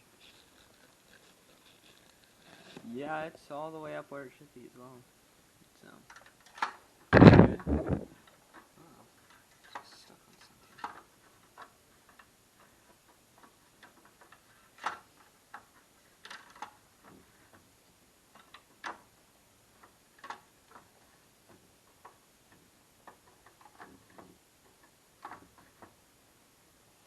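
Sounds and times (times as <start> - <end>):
small parts and tools clicking: 6.0 - 17.7, 18.3 - 26.0.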